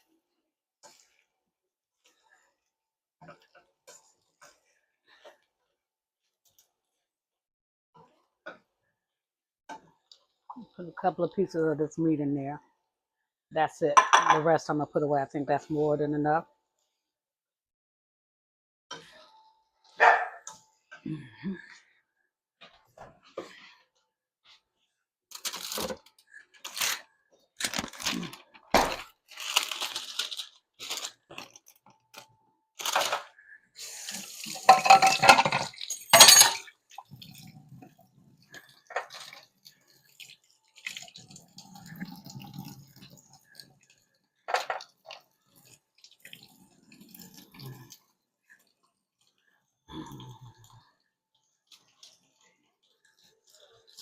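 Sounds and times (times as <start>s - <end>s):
dishes and utensils clattering: 14.0s - 14.6s, 34.4s - 36.8s.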